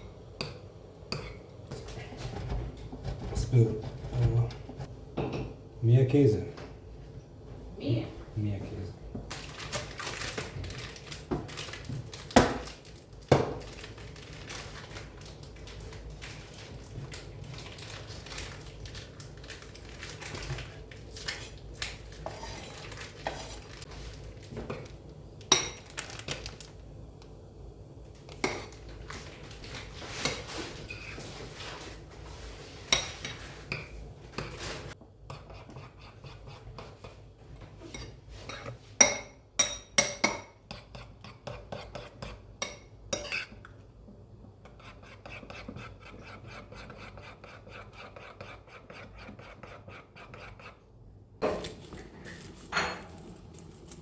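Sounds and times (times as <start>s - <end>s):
cookware and cutlery clinking: 19.5s - 23.9s, 24.6s - 26.4s, 28.3s - 31.3s, 32.8s - 34.7s, 37.6s - 43.8s, 51.4s - 54.0s.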